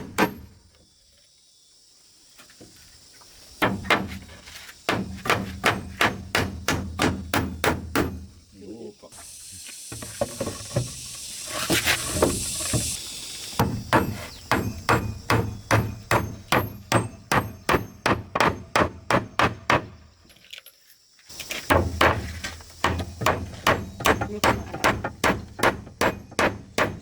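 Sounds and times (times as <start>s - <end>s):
hiss: 8.8s - 13.8s
hammer blows: 13.6s - 19.9s.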